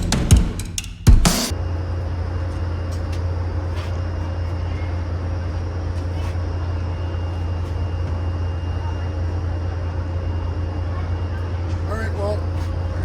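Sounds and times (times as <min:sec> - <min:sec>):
faint high hum: 0:01.5 - 0:13.0
low machine drone: 0:01.5 - 0:13.0.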